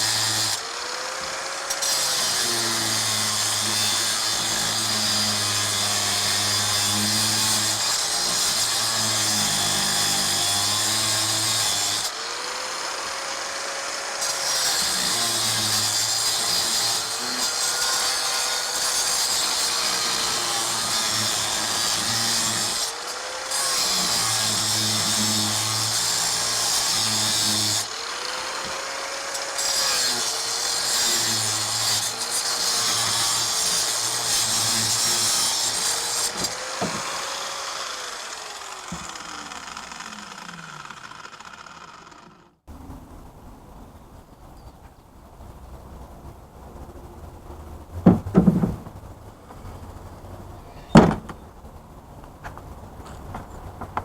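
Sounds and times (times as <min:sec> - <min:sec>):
power saw cutting metal: 0:00.0 - 0:42.6.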